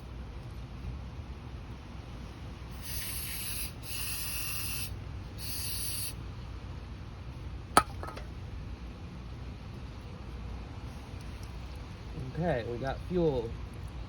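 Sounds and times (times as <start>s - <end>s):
aerosol spray hissing: 2.7s - 6.2s.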